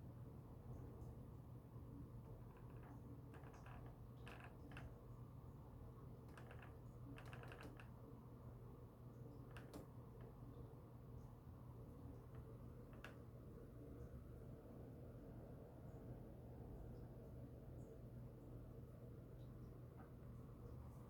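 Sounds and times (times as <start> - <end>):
irregular creaks and clicks: 2.4 - 5.0, 6.3 - 7.9, 12.3 - 13.2
low steady hum: 7.8 - 21.0.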